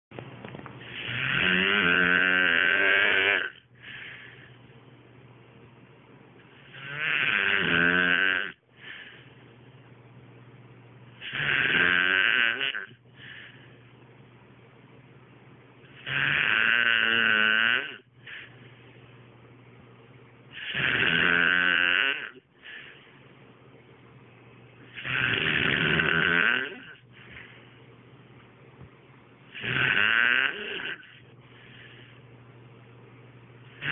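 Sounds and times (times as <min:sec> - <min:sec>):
man snoring: 0:00.8 - 0:04.2, 0:06.6 - 0:09.0, 0:11.2 - 0:13.0, 0:16.0 - 0:18.1, 0:20.5 - 0:22.4, 0:24.9 - 0:27.1, 0:29.5 - 0:31.2
quiet breathing: 0:03.6 - 0:04.9, 0:08.6 - 0:10.0, 0:13.0 - 0:14.2, 0:18.1 - 0:19.5, 0:22.4 - 0:23.6, 0:26.8 - 0:28.2, 0:30.9 - 0:32.6.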